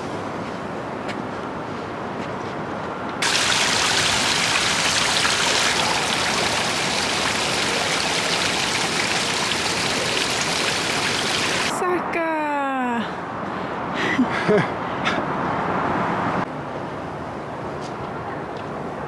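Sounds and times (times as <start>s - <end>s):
water hissing: 3.2s - 11.7s.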